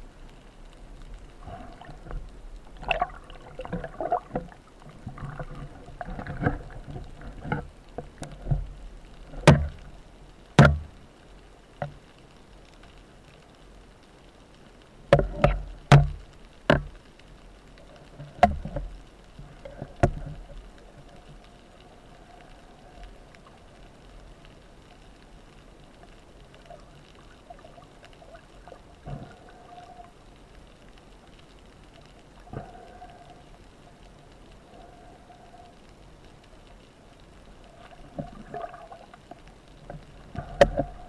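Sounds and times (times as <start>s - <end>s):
faint underwater hum: 0.0s - 41.0s
sharp underwater knocks and clicks: 1.6s - 11.0s, 11.8s - 12.0s, 15.1s - 17.1s, 18.0s - 21.3s, 37.9s - 41.0s
soft underwater thuds: 1.8s - 9.9s, 10.6s - 11.0s, 15.1s - 17.0s, 39.9s - 41.0s.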